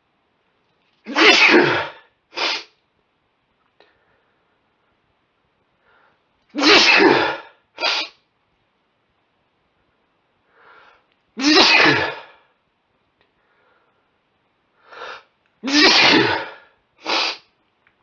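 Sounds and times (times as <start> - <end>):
man sneezing: 1.1 - 2.7, 6.6 - 8.2, 11.4 - 12.4, 15.6 - 17.4
sharp breath intake: 2.3 - 2.7, 7.8 - 8.2, 16.2 - 17.5.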